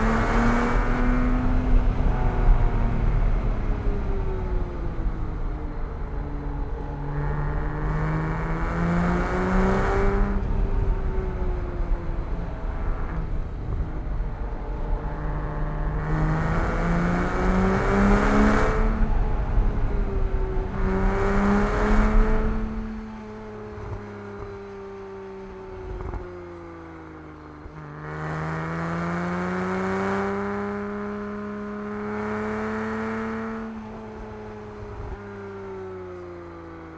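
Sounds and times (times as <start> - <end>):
car engine revving: 0.0 - 25.0
road and tyre rumble: 0.0 - 36.9.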